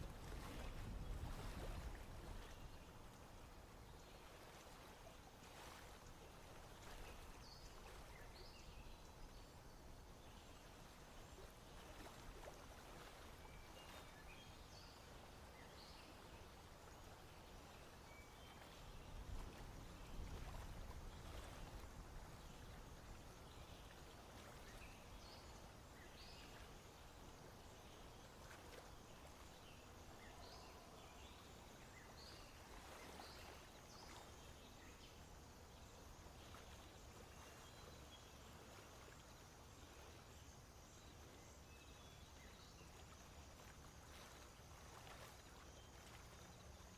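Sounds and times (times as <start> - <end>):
faint swamp ambience: 0.0 - 46.9.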